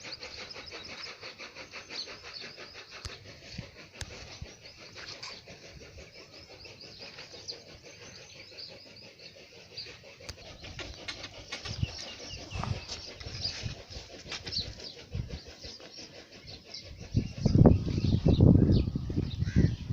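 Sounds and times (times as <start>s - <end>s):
small birds chirping: 0.0s - 19.9s.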